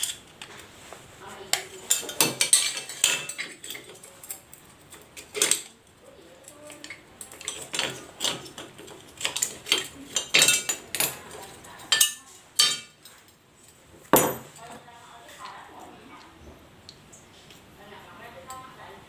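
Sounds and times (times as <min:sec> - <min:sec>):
metal tools clinking: 0:01.8 - 0:05.8, 0:06.5 - 0:14.8.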